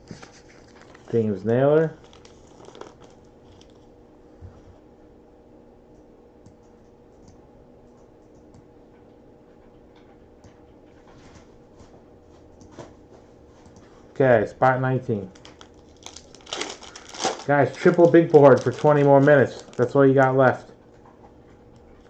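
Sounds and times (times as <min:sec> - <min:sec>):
faint steady hum: 0:00.0 - 0:22.0
trading cards being handled: 0:00.1 - 0:03.8, 0:15.3 - 0:20.6.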